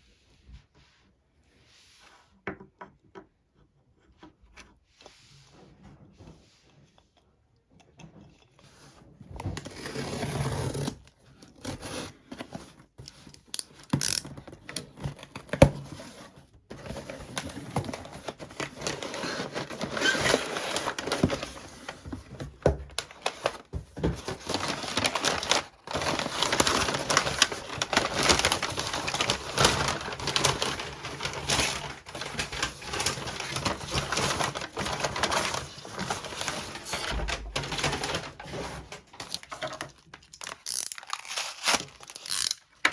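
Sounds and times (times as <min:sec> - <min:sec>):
packaging crinkling: 0:11.6 - 0:42.9
packaging tearing: 0:16.7 - 0:42.9.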